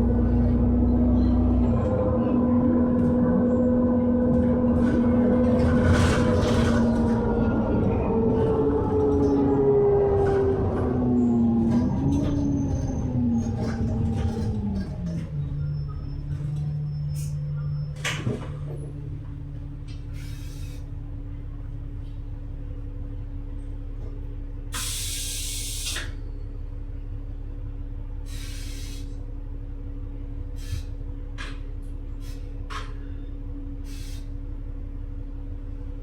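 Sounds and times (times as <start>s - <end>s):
bus engine hum: 0.0s - 36.0s
air brake hiss: 20.1s - 20.8s, 24.7s - 26.2s, 28.2s - 29.2s, 30.6s - 31.0s, 32.2s - 32.6s, 33.8s - 34.4s.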